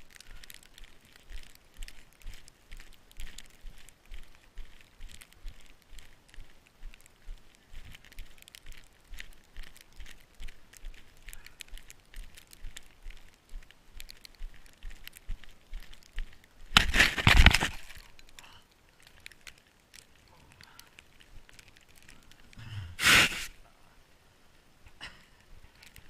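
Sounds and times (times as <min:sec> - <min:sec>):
footsteps crunching through snow: 0:00.0 - 0:18.2, 0:23.0 - 0:23.6.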